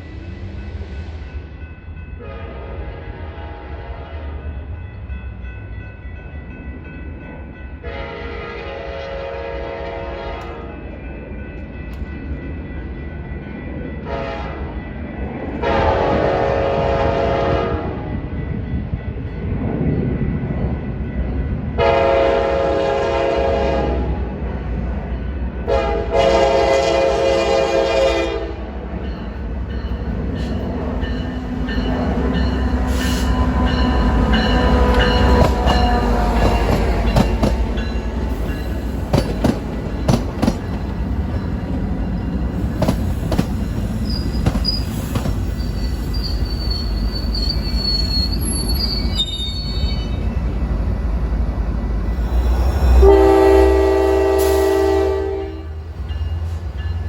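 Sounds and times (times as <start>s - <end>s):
train rumbling past: 0.0s - 57.0s
locomotive horn blasts: 7.8s - 10.7s, 14.1s - 14.6s, 15.6s - 18.0s, 21.8s - 24.2s, 25.7s - 28.6s, 52.9s - 55.9s
wheels clicking over rail joints: 34.6s - 45.4s
high wheel squeal: 43.1s - 50.4s.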